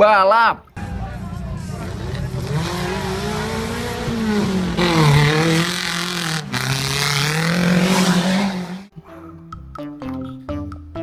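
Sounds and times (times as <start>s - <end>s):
race car engine revving: 0.8s - 9.2s
plucked guitar music: 8.9s - 11.0s.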